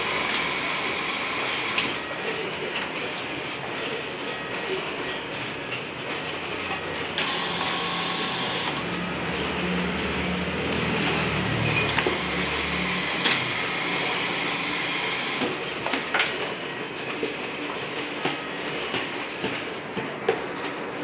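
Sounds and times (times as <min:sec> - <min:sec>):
mechanical running noise: 0:00.0 - 0:03.1, 0:06.1 - 0:16.9.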